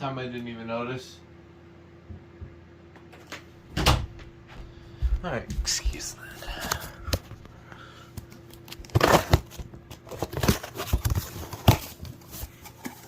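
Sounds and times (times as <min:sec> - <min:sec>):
packaging knocks and rustles: 0:08.2 - 0:13.0.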